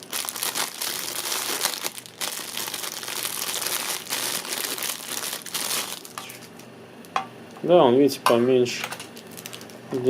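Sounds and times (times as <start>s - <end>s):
packaging crinkling and rustling: 0.0s - 6.6s, 8.9s - 10.0s.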